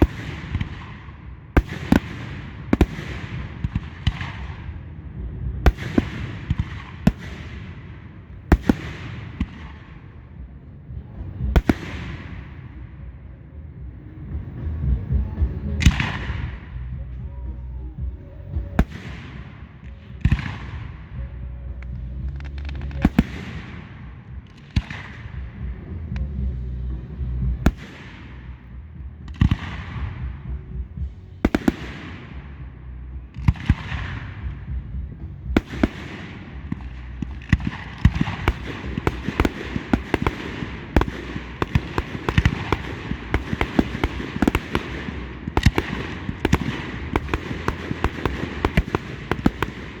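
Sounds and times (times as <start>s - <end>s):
firework bangs: 0.0s - 10.2s, 11.3s - 12.8s, 18.4s - 50.0s
firework crackling: 35.5s - 50.0s.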